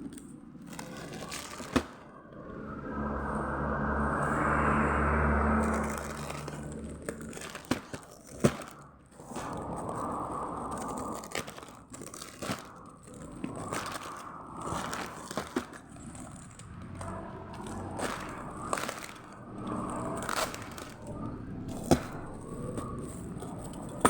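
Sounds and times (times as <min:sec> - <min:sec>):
plastic packaging crinkling: 0:00.0 - 0:02.0, 0:05.2 - 0:24.0.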